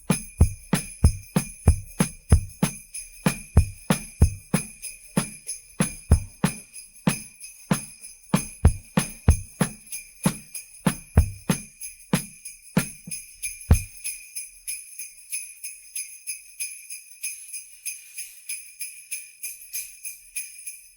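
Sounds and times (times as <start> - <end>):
drum kit beat: 0.0 - 13.9
sleigh bells shaken: 0.0 - 20.9.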